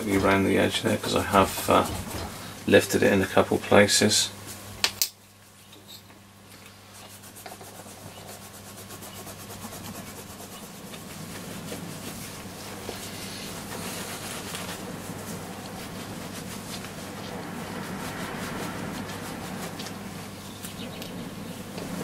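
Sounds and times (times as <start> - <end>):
sandpaper rasping on metal: 6.9 - 18.3.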